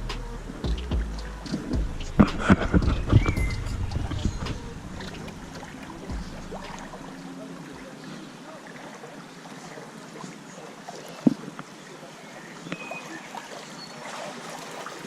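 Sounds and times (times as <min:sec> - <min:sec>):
low rumble: 0:00.0 - 0:07.1.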